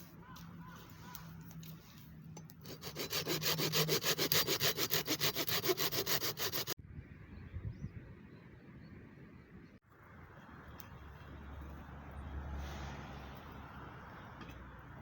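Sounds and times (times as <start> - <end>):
hand saw cutting wood: 2.5 - 6.8.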